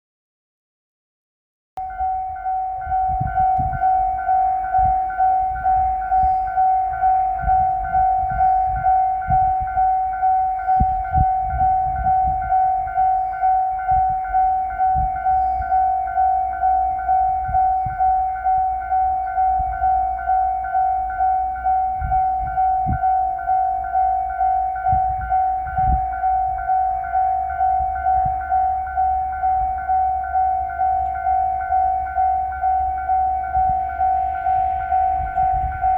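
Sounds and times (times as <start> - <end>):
level-crossing bell dinging: 1.8 - 35.9
low thumps and rumble: 2.0 - 35.9.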